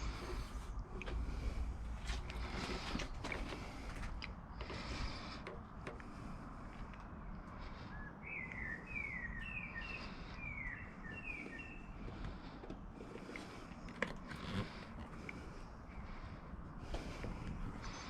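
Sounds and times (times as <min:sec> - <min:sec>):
outdoor background noise: 0:00.0 - 0:18.0
bird singing chirps: 0:07.6 - 0:12.2.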